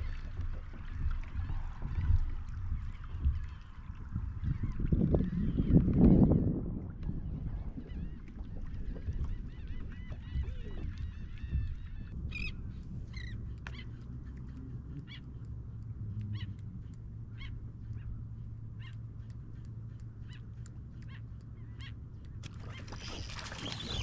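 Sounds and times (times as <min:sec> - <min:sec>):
steady low rumble: 0:00.0 - 0:23.5
birds calling: 0:16.2 - 0:24.0.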